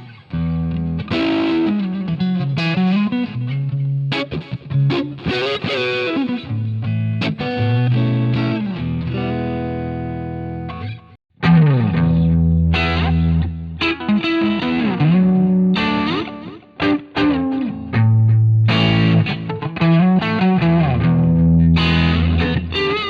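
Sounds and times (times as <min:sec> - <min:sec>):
overdriven electric guitar riff: 0:00.0 - 0:23.0.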